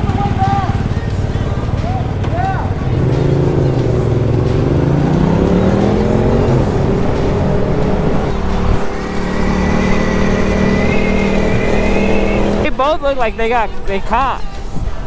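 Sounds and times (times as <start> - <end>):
motorcycle engine accelerating: 0.0 - 12.8
thin high whine: 6.8 - 12.7.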